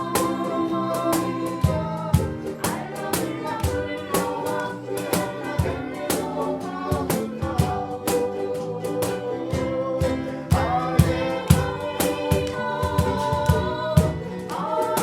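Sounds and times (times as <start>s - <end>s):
ukulele ensemble music: 0.0s - 15.0s.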